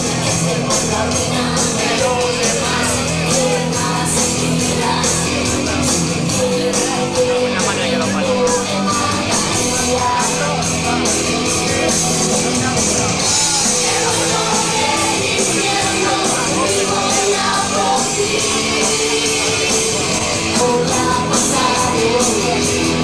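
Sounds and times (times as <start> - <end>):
drums: 0.0 - 23.0
electric guitars: 0.0 - 23.0
shouted singing: 13.3 - 23.0.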